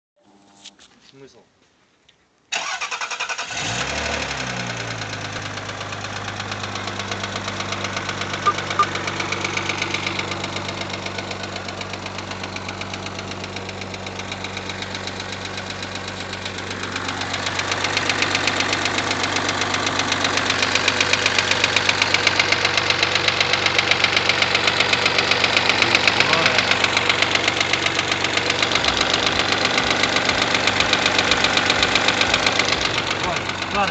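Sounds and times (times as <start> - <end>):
car engine running: 4.2 - 33.9
rhythmic metallic engine knock: 21.9 - 33.9.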